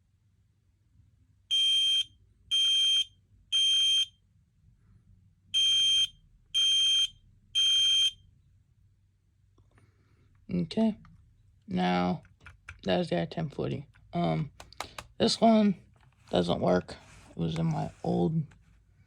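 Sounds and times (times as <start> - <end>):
smoke alarm beeps: 1.5 - 4.2, 5.5 - 8.2.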